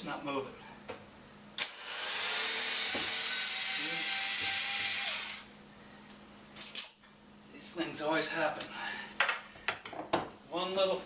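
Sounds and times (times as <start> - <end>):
power drill running: 1.6 - 5.5.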